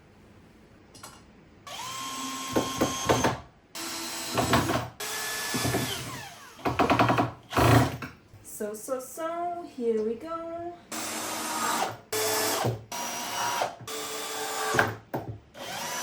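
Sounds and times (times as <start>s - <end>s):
power drill driving screws: 1.7s - 8.0s, 10.9s - 15.0s, 15.6s - 16.0s.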